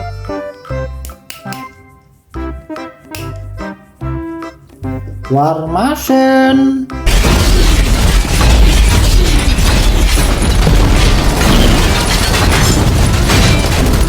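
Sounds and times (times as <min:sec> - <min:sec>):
electronic explosion rumble: 0:07.1 - 0:14.0.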